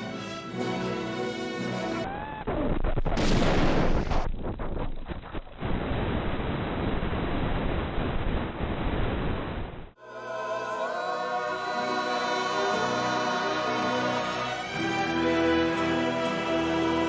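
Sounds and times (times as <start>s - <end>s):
music with long held notes: 0.0s - 2.0s, 10.0s - 17.0s.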